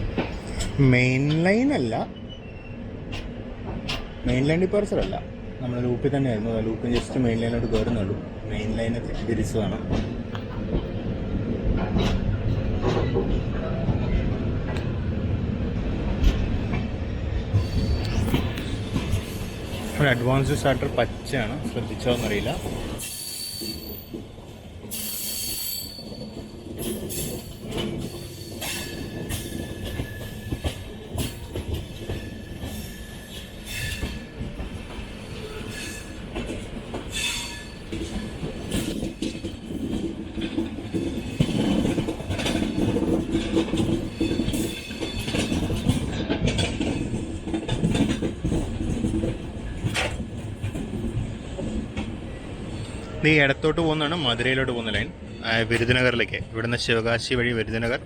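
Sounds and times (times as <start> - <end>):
train wheels clacking over rail joints: 3.1 - 4.2, 26.4 - 52.2
high wheel squeals: 23.0 - 24.1, 24.9 - 30.8, 37.1 - 37.9.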